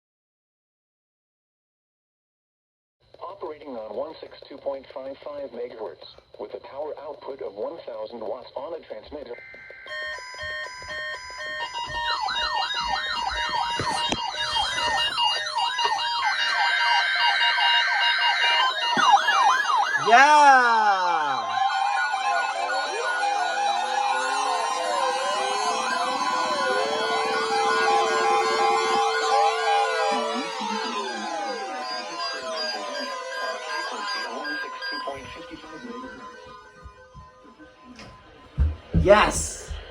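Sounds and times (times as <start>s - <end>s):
warbling siren over steady tones: 9.4s - 38.9s.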